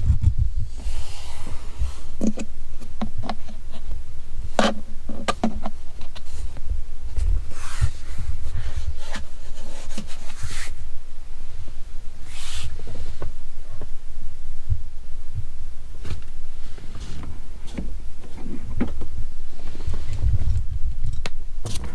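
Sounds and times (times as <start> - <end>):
car cabin rumble: 14.7 - 21.0.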